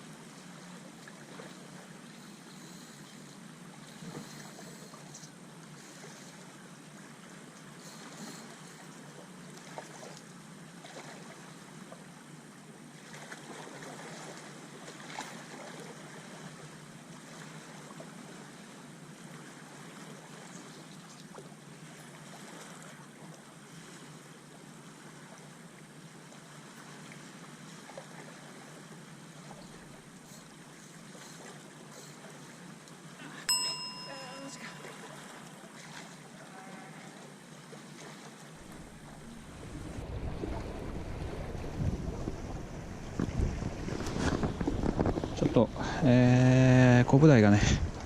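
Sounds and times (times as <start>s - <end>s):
water lapping and sloshing: 0.0s - 48.0s.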